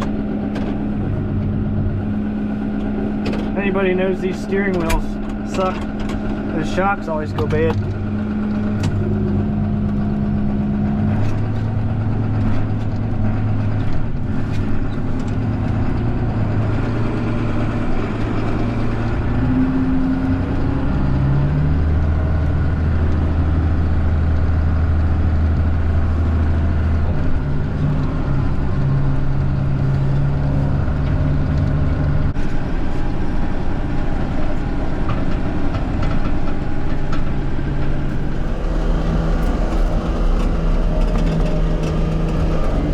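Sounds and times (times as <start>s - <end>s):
tractor diesel engine running: 0.0s - 21.0s, 38.1s - 42.9s.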